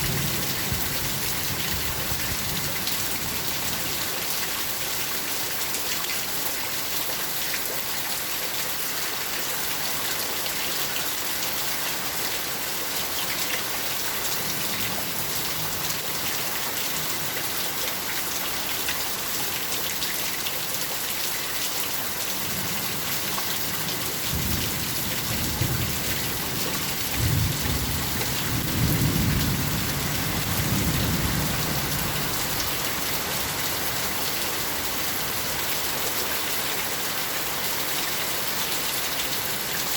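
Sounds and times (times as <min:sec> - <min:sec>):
steady rain: 0:00.0 - 0:39.9
thunder rumbling: 0:24.3 - 0:33.2.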